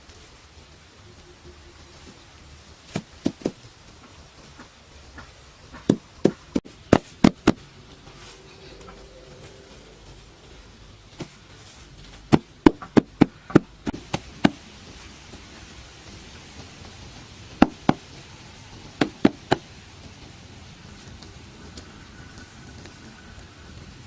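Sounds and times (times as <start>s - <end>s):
sharp hard knocks: 17.6s - 18.2s, 19.0s - 19.6s.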